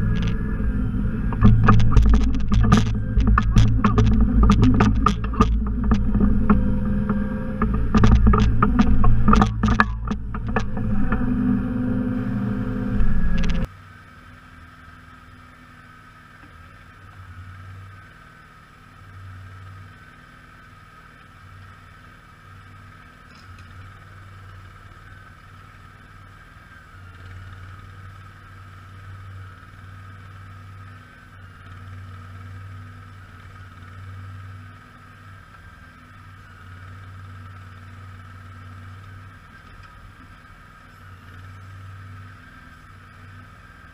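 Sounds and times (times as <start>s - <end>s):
sharp engine knocks: 0.0s - 13.7s
garden tractor engine running: 0.0s - 43.9s.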